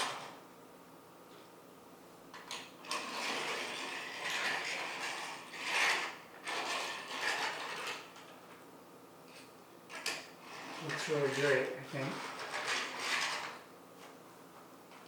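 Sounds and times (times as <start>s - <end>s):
plastic parts rattling and scraping: 2.4s - 8.3s, 9.9s - 13.6s.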